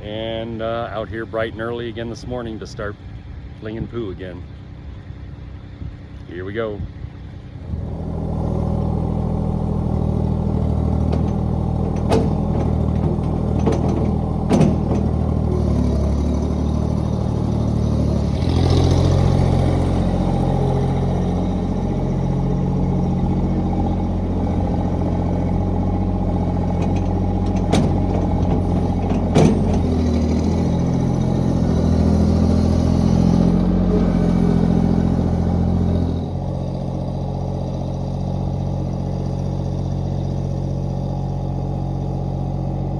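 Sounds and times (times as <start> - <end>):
tractor engine running: 0.0 - 42.9
sharp metal clanks: 11.0 - 15.4, 26.8 - 30.6.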